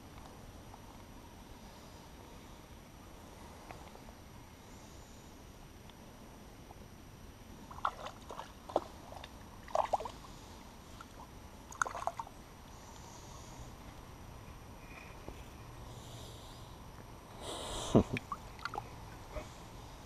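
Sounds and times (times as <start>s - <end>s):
faint steady background noise: 0.0s - 20.0s
small water splashes: 7.7s - 10.2s, 11.0s - 12.4s, 18.1s - 18.9s.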